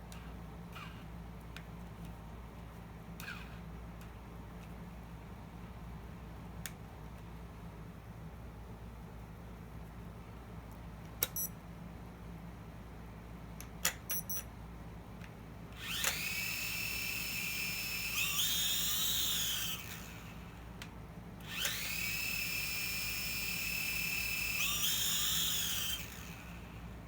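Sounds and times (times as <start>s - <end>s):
drone motors whining: 15.8s - 20.5s, 21.5s - 26.7s.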